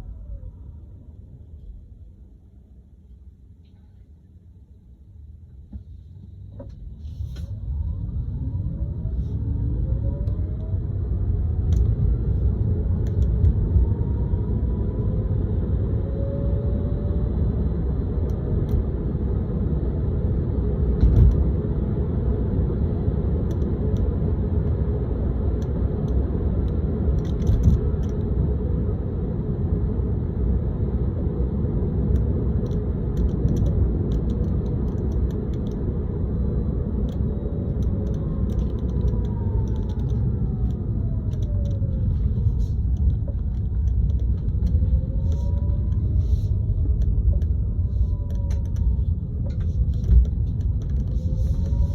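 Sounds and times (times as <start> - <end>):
faint whine: 0.0 - 51.9
road and tyre rumble: 0.0 - 51.9
light rattling clicks: 42.9 - 46.0.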